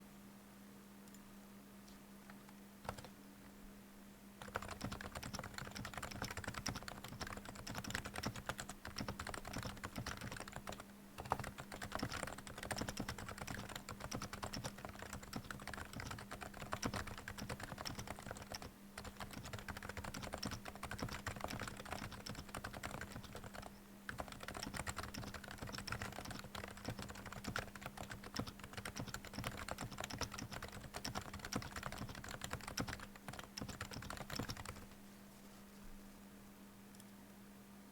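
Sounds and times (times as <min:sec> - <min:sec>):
low background hum: 0:00.0 - 0:37.9
fast keyboard typing: 0:02.3 - 0:03.1, 0:04.4 - 0:35.0.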